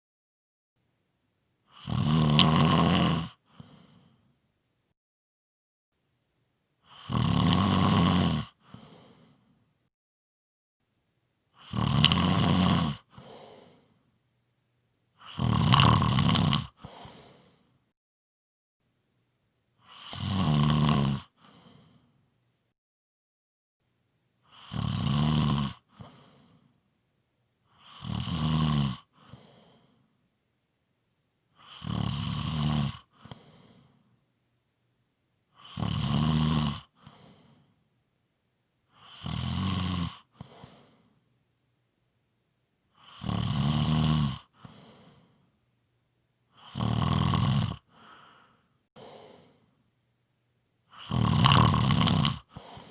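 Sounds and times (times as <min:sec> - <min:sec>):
loud snoring: 0:01.7 - 0:04.1, 0:06.9 - 0:09.4, 0:11.6 - 0:13.9, 0:15.2 - 0:17.6, 0:19.8 - 0:22.0, 0:24.5 - 0:26.6, 0:27.7 - 0:29.9, 0:31.6 - 0:33.9, 0:35.5 - 0:37.6, 0:38.9 - 0:41.1, 0:42.9 - 0:45.3, 0:46.5 - 0:49.7, 0:50.9 - 0:52.9
quiet breath: 0:03.4 - 0:04.4, 0:08.6 - 0:09.7, 0:13.0 - 0:14.2, 0:16.8 - 0:17.9, 0:21.4 - 0:22.3, 0:25.9 - 0:26.9, 0:29.1 - 0:30.2, 0:33.0 - 0:34.3, 0:36.9 - 0:37.9, 0:40.3 - 0:41.3, 0:44.5 - 0:45.6, 0:47.8 - 0:49.9, 0:52.4 - 0:52.9.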